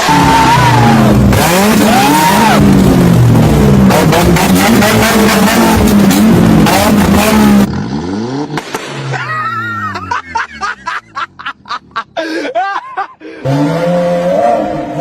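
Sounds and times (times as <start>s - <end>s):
car engine revving loudly: 0.0s - 9.0s, 13.4s - 15.0s
exhaust cracks: 0.0s - 9.6s
person laughing: 9.1s - 13.5s.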